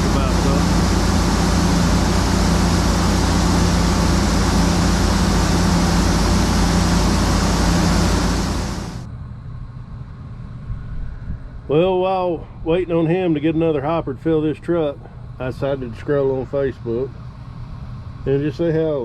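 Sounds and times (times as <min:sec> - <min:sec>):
heavy vehicle engine rushing: 0:00.0 - 0:09.1
low rumble: 0:00.0 - 0:11.7.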